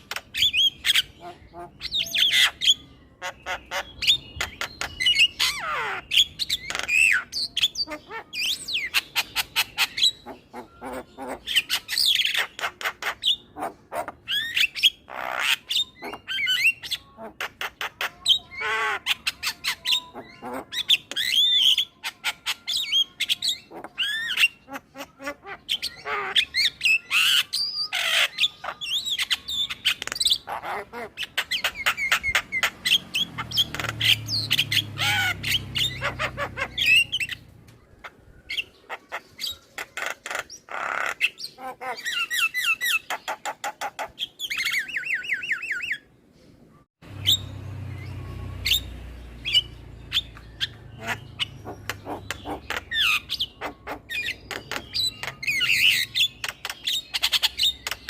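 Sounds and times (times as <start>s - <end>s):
myna chattering: 28.0s - 42.3s, 49.4s - 55.8s.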